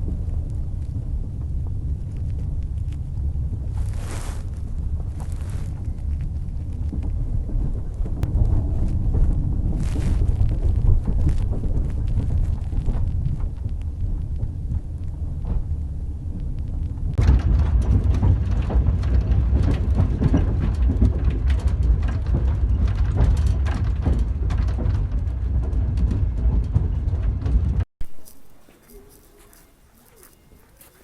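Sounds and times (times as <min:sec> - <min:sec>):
train wheels clattering on rails: 0:17.2 - 0:27.8.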